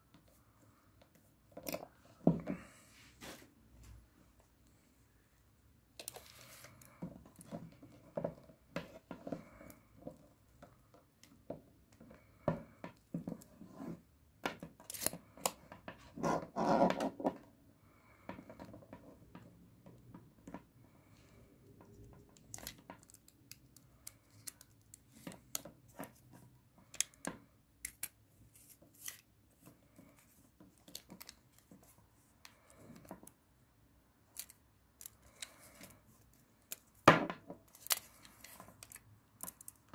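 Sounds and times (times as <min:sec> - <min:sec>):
objects handled clicking and tapping: 0:01.0 - 0:02.7, 0:21.6 - 0:33.4, 0:34.2 - 0:39.9.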